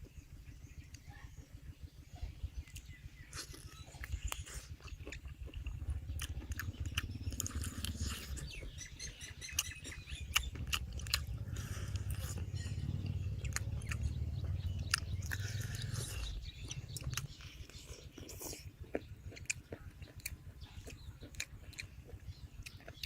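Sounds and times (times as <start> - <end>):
crunching fried food: 2.6 - 23.0.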